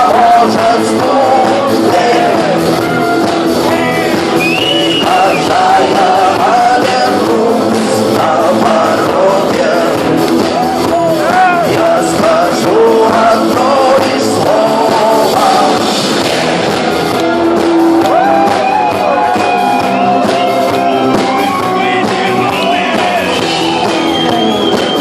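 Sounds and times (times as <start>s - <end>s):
person singing: 0.0s - 17.2s
live rock band playing: 0.0s - 25.0s.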